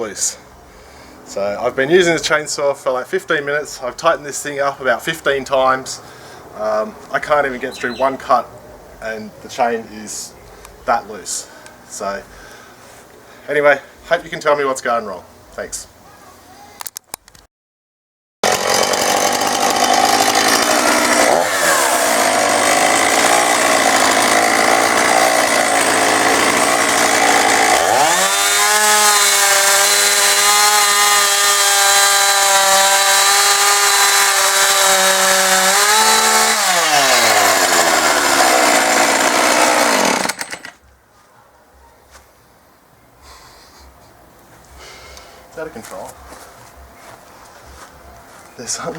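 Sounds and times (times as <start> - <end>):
chainsaw cutting wood: 6.6 - 8.2, 18.4 - 40.8.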